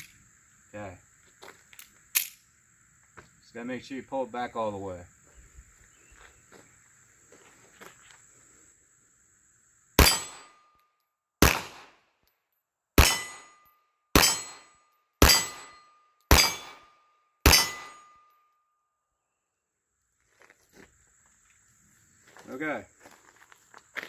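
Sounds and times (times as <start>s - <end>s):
pistol shots: 10.0s - 10.6s, 11.4s - 12.0s, 13.0s - 13.6s, 14.2s - 18.1s
steel target ringing: 10.0s - 10.6s, 13.0s - 18.4s.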